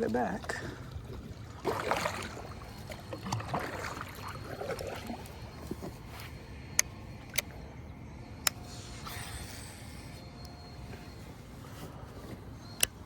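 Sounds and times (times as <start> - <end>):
water sloshing against boat: 0.0 - 7.8.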